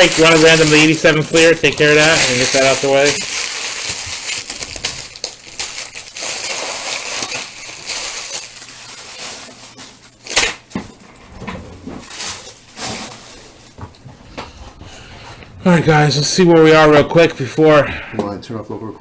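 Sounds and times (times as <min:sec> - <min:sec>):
wrappers crinkling: 0:00.0 - 0:10.7, 0:12.0 - 0:14.0.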